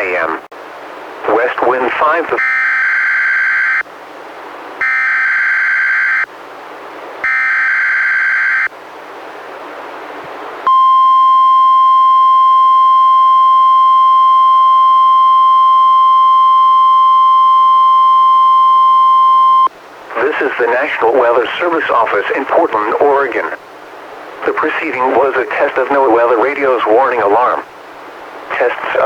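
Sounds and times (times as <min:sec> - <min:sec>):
radio hiss: 0:00.0 - 0:00.5, 0:01.2 - 0:02.4, 0:20.0 - 0:27.8, 0:28.4 - 0:29.0
steady warning alarm tone: 0:02.4 - 0:03.8, 0:04.8 - 0:06.3, 0:07.2 - 0:08.7, 0:10.7 - 0:19.7.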